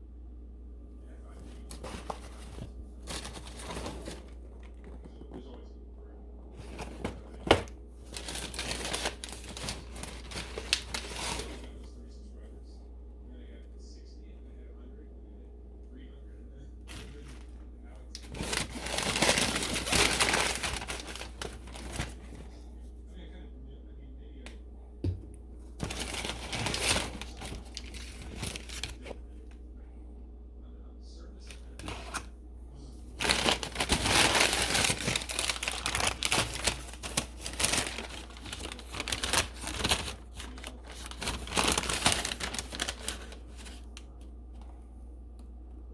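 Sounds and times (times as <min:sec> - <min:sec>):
packaging crinkling: 0:01.4 - 0:05.5, 0:06.6 - 0:11.7, 0:16.9 - 0:22.5, 0:25.7 - 0:29.2, 0:31.4 - 0:32.3, 0:33.1 - 0:44.0.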